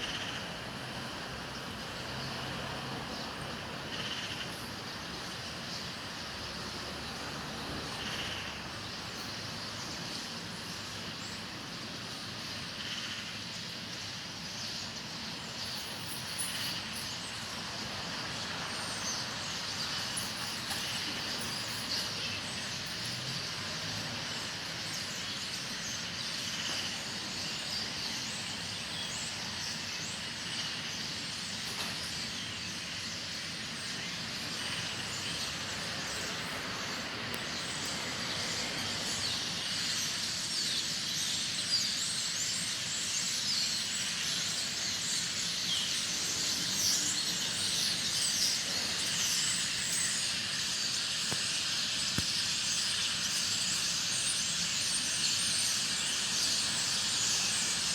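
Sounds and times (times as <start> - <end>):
faint traffic rumble: 0.0 - 41.6
flock of birds chirping: 0.0 - 57.9.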